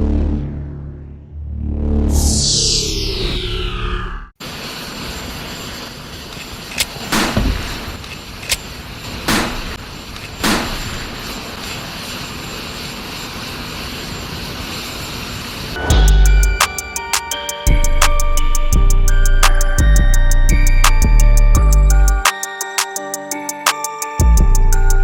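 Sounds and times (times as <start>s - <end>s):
wind: 4.4s - 16.0s.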